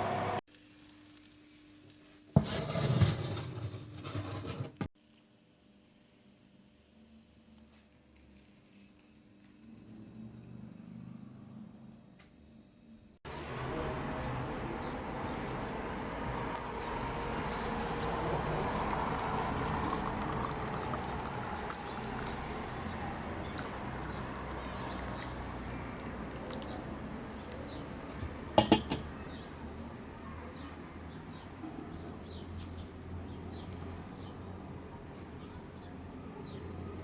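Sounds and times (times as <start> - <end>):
liquid pouring: 18.0 - 27.9.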